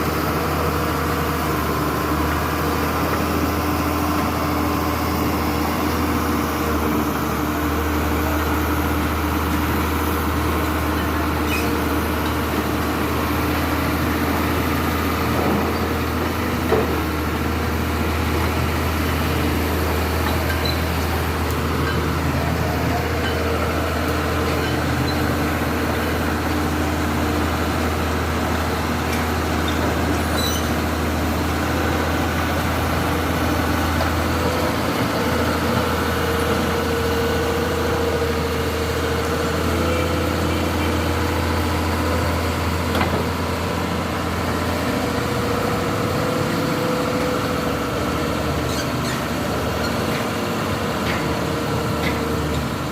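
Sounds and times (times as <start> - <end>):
diesel engine running: 0.0 - 52.9.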